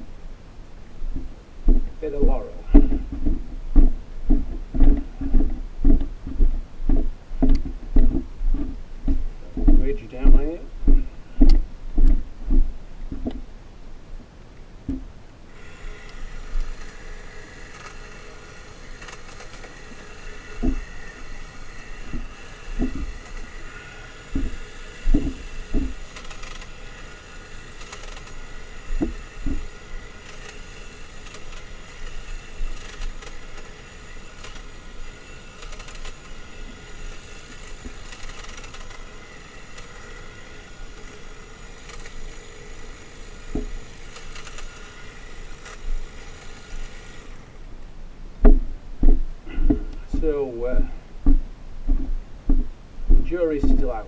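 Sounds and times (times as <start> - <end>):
hedge trimmer running: 0.0 - 13.6, 14.9 - 54.0
low thumps: 0.0 - 15.2, 20.6 - 21.2, 21.9 - 23.6, 24.3 - 26.1, 43.5 - 43.8, 47.9 - 54.0.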